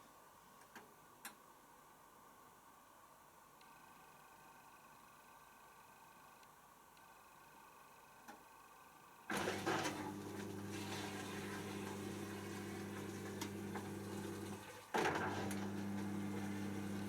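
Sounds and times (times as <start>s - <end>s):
washing machine hum: 9.3s - 17.0s.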